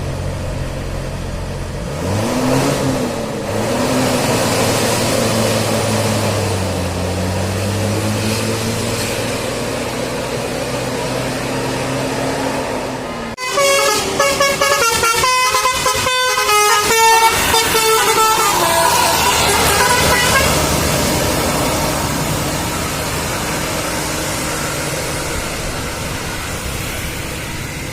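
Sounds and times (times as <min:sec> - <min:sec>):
bus engine humming: 0:00.0 - 0:27.9
multi-tone bus horn melody: 0:13.4 - 0:22.1.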